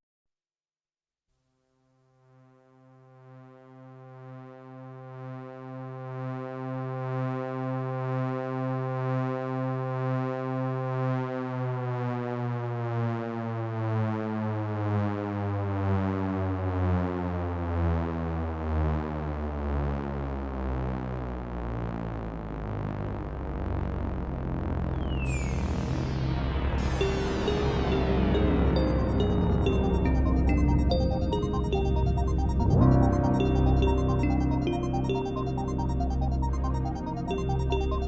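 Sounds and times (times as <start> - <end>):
pulsing low synthesizer tone: 20.8 - 38.0.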